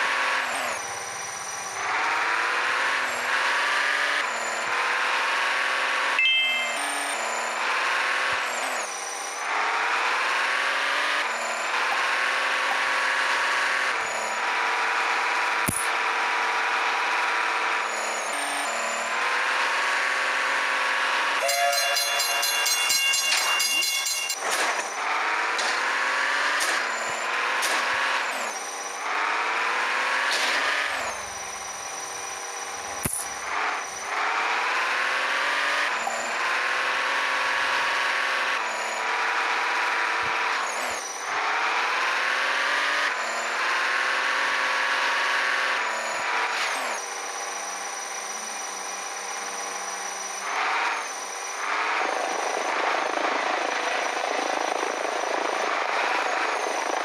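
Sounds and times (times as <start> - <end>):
toy electric motors whining: 21.4 - 29.6.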